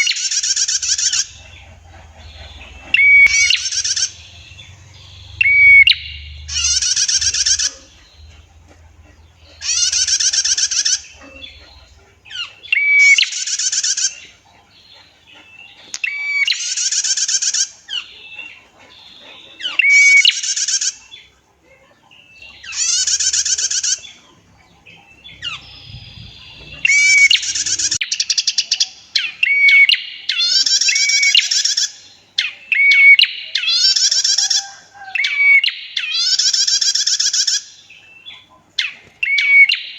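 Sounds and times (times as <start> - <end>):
bird buzzy trills: 0.0 - 14.4, 25.0 - 28.5.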